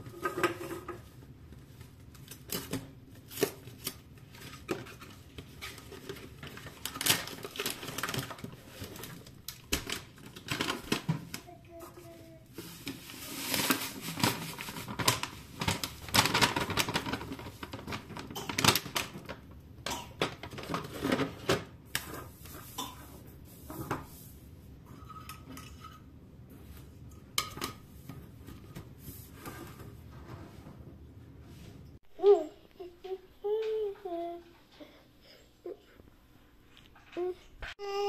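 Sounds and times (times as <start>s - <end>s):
dishes and cutlery clinking: 24.8s - 26.2s.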